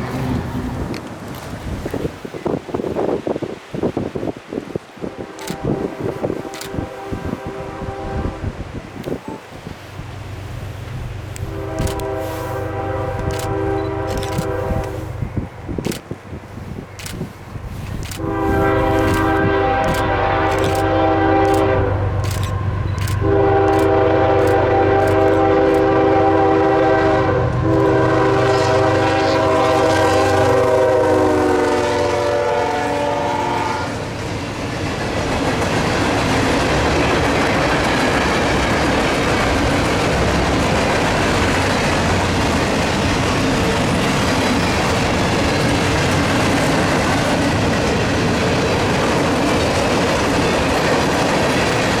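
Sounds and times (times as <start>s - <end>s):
locomotive horn blasts: 5.0s - 9.6s, 11.4s - 15.3s, 18.2s - 34.1s
train wheels rumbling and clattering: 8.5s - 32.1s, 33.3s - 52.0s.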